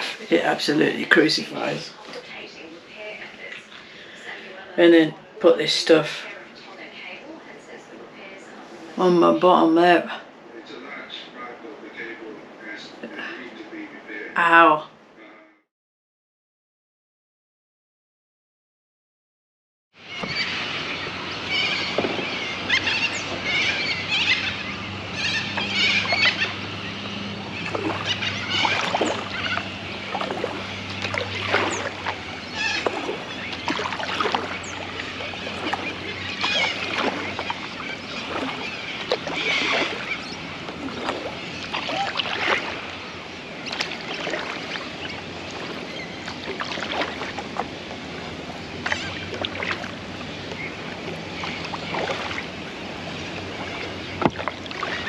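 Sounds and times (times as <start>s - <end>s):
paddle splashing in water: 20.0s - 55.0s.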